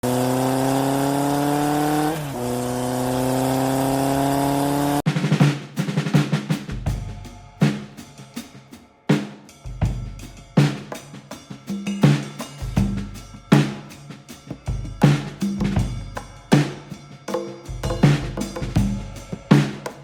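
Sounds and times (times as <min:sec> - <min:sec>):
heavy drum-kit beat: 0:05.1 - 0:20.0.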